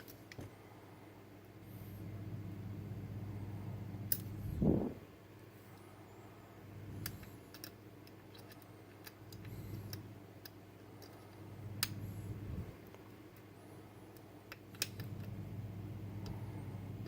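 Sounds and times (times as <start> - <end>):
low steady hum: 0.0 - 17.0
lock pick metallic clicks: 4.0 - 4.4, 14.2 - 15.4.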